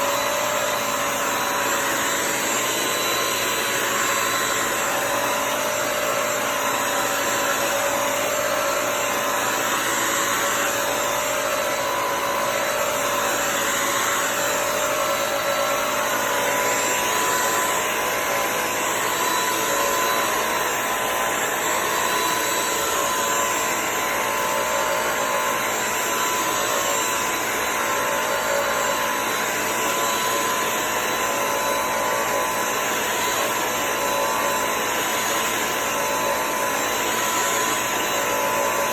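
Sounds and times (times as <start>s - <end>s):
floor cleaner motor whine: 0.0s - 38.9s.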